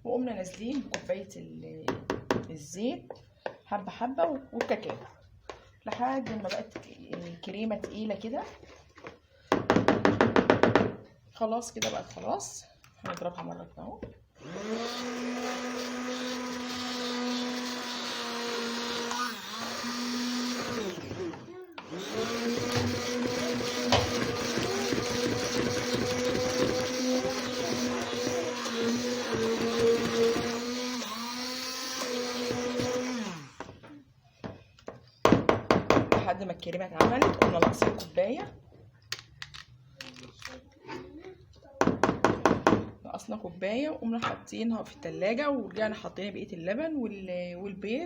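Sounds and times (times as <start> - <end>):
electric mixer whining: 14.4 - 33.7.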